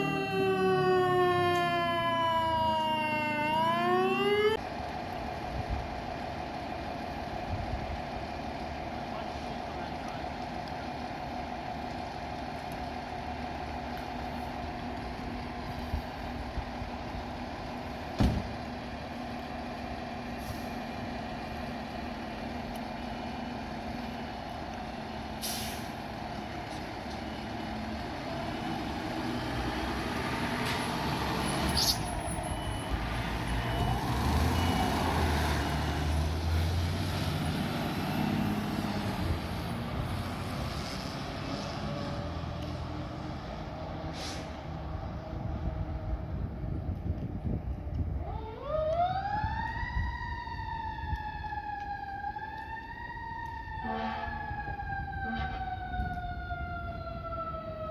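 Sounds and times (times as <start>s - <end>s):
diesel truck engine rumbling: 0.0s - 57.9s
air brakes hissing: 20.4s - 20.9s, 25.4s - 26.1s, 44.0s - 44.8s
faint back-up beeper: 32.0s - 35.0s.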